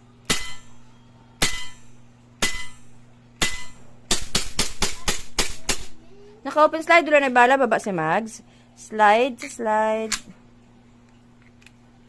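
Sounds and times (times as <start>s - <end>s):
airsoft pistol shots: 3.4s - 5.9s.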